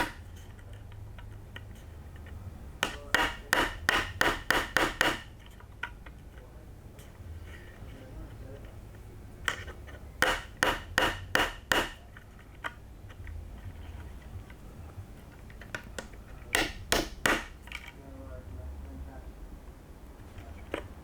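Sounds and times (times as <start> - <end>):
sharp taps on plastic part: 1.6 - 6.0, 9.4 - 13.3, 15.5 - 17.9.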